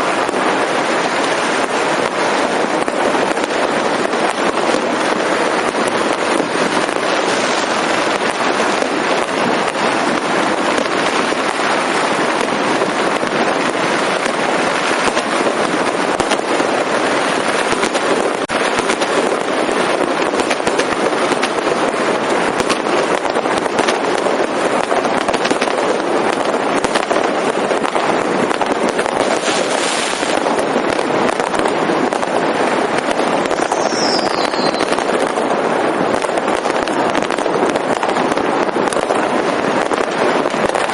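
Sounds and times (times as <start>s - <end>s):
firecrackers crackling: 0.0s - 40.9s
falling firework whistle: 33.0s - 35.5s.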